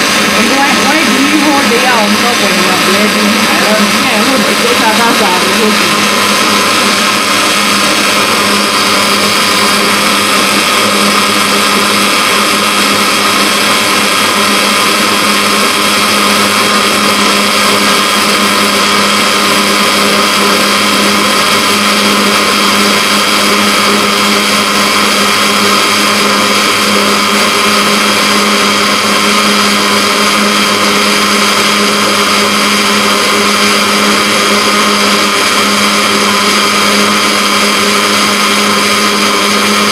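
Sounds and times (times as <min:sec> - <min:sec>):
electric blender running: 0:00.0 - 0:39.9.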